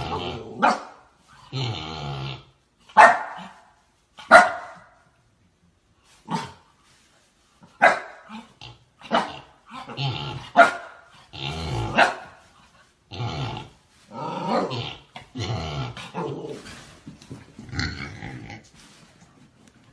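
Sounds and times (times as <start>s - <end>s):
dog growling: 0.0s - 0.6s, 8.3s - 10.6s, 11.2s - 12.1s, 13.1s - 16.9s
dog barking: 0.6s - 1.0s, 2.9s - 5.0s, 7.8s - 8.3s, 9.1s - 9.4s, 10.5s - 11.1s, 11.9s - 12.4s.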